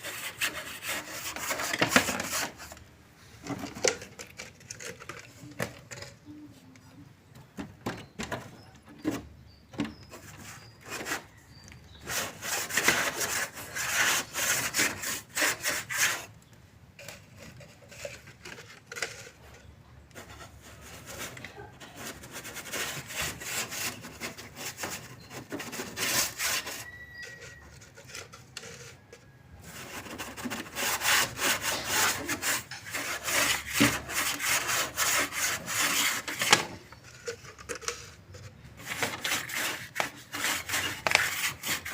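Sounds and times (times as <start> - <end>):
wood being sawn by hand: 0.0 - 2.8, 12.0 - 16.3, 29.7 - 36.8, 38.8 - 41.9.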